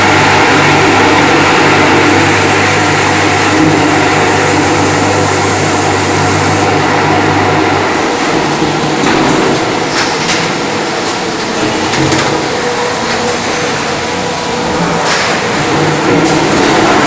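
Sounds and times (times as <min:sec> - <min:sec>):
paint sprayer hum and hiss: 0:00.0 - 0:06.8.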